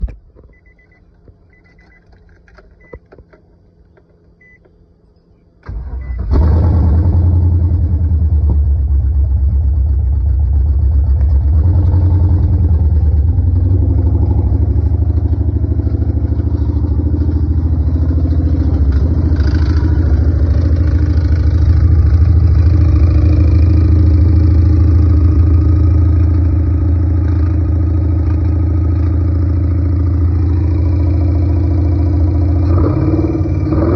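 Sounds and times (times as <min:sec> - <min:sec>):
car engine starting and running: 0:00.0 - 0:33.9
faint short beeps: 0:00.4 - 0:02.1, 0:04.4 - 0:06.3.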